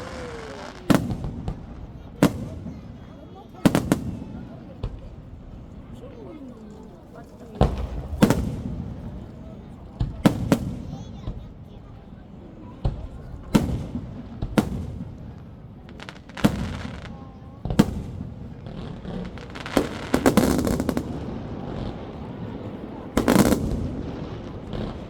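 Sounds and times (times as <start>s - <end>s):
fireworks bangs: 0.0s - 25.0s
fireworks crackling: 0.0s - 25.0s.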